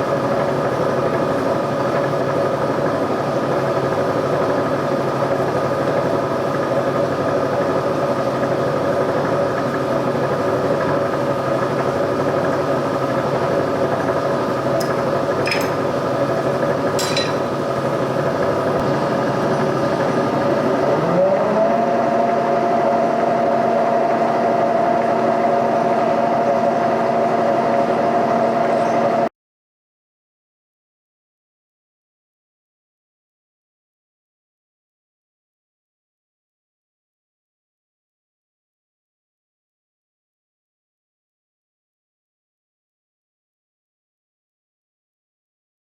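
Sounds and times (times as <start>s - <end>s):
boring machine running: 0.0s - 29.3s.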